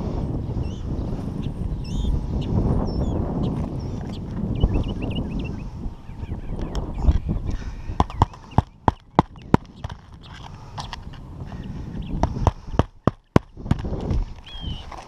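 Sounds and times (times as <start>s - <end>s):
hammer striking nails: 12.2s - 13.9s.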